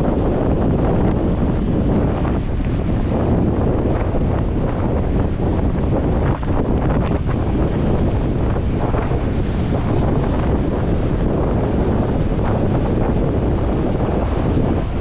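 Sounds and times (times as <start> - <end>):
ocean surf breaking: 0.0 - 15.0
wind buffeting microphone: 0.0 - 15.0.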